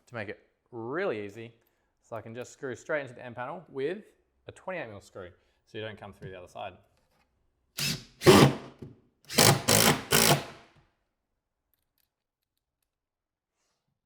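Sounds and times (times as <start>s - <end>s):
power drill driving screws: 7.8s - 10.6s.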